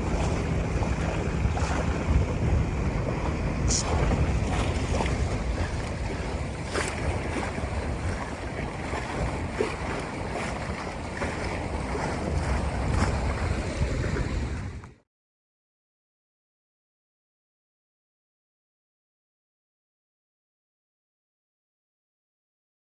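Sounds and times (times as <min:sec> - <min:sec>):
faint water splashes: 0:00.0 - 0:15.0
water washing along hull: 0:00.0 - 0:15.0
wind buffeting microphone: 0:00.0 - 0:15.0.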